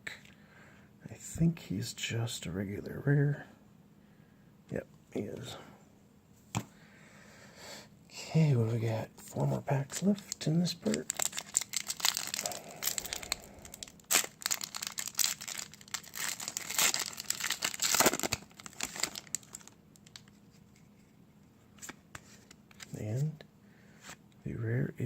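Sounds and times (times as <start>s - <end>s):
cards being handled: 9.2s - 21.1s, 21.7s - 23.3s
foil wrapper tearing and crinkling: 9.9s - 20.3s.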